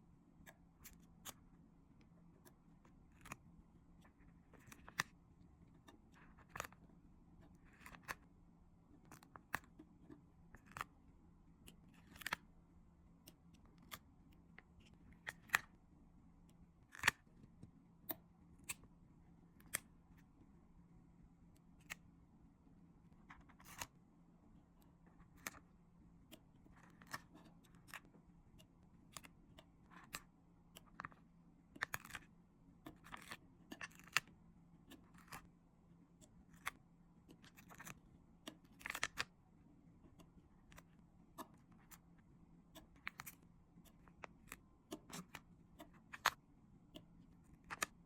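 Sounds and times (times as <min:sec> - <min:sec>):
faint steady hum: 0:00.0 - 0:48.0.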